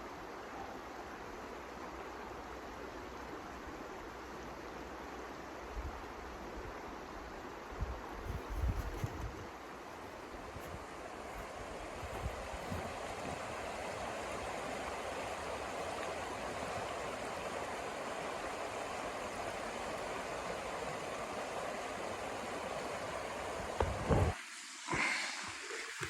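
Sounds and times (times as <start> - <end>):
snowstorm wind rushing: 7.8 - 15.0, 23.5 - 26.0.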